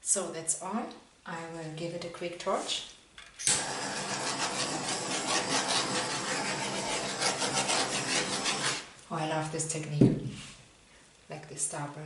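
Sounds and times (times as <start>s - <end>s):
torch flame hissing: 3.5s - 8.9s.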